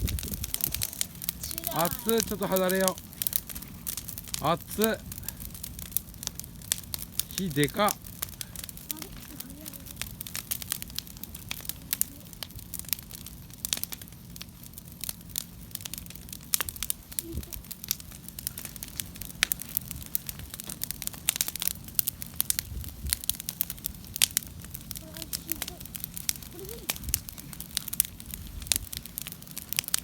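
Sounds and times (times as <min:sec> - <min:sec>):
bonfire crackling and popping: 0:00.0 - 0:30.0.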